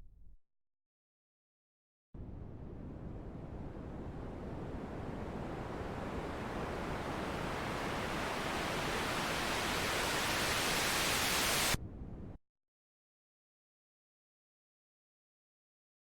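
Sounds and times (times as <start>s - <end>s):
white noise riser sweep: 5.6s - 11.8s.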